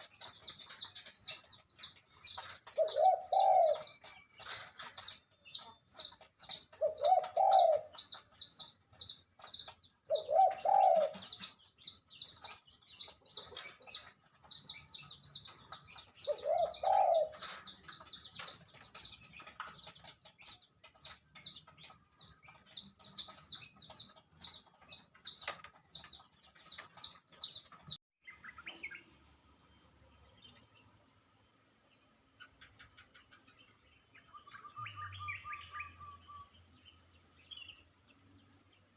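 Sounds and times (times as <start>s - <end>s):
birds chirping: 0.0s - 38.9s
coo-like bird calls: 2.2s - 5.2s, 6.0s - 8.3s, 10.1s - 11.6s, 15.4s - 18.6s, 34.3s - 36.6s.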